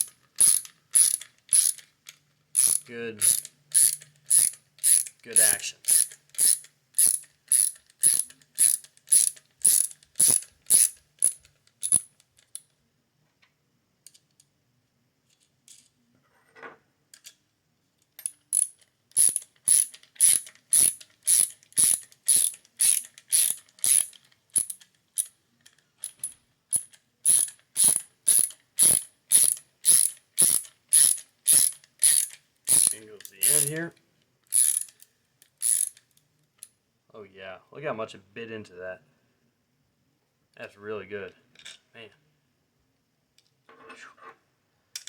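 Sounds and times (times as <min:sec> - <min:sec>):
ratchet clicking: 0:00.0 - 0:12.6, 0:18.2 - 0:36.7.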